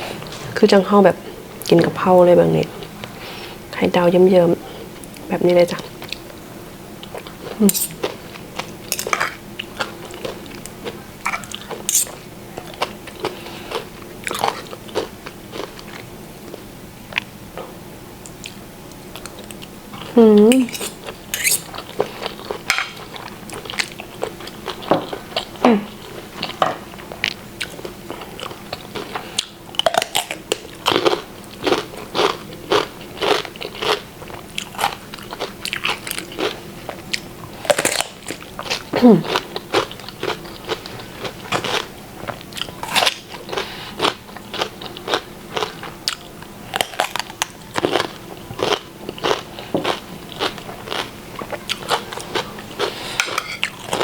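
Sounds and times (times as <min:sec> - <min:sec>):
person humming: 0:38.9 - 0:39.4.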